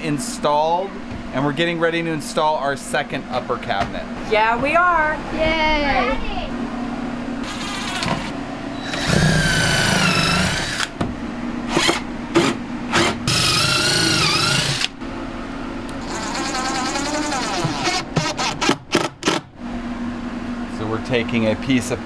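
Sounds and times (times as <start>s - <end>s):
electric drill driving screws: 8.8s - 10.9s, 11.7s - 15.0s, 16.0s - 19.4s.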